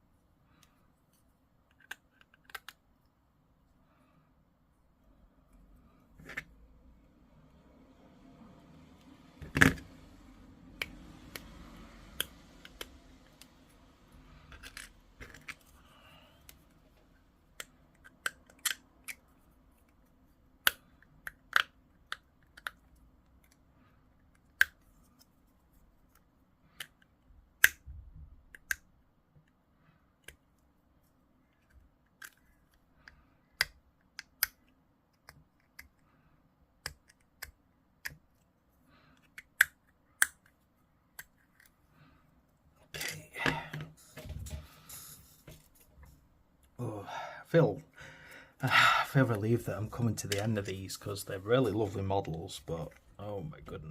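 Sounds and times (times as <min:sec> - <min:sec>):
clicks and taps of plastic pieces: 0:01.7 - 0:02.8, 0:20.6 - 0:23.6.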